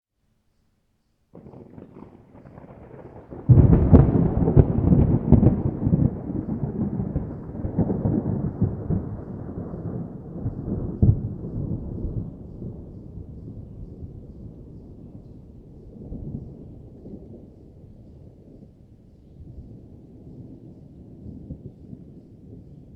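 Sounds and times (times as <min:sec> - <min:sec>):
sharp thunder crack: 0:01.4 - 0:14.8
thunder rumbling and cracking: 0:01.4 - 0:18.8.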